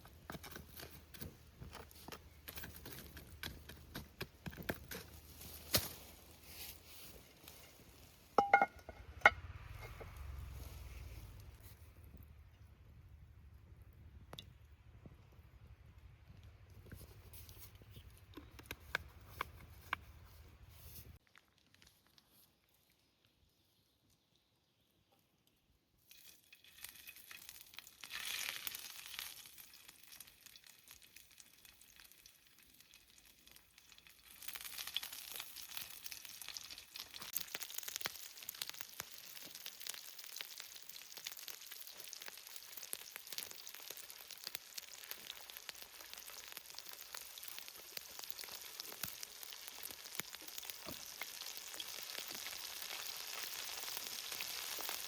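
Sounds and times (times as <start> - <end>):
food sizzling in a pan: 26.8 - 55.0.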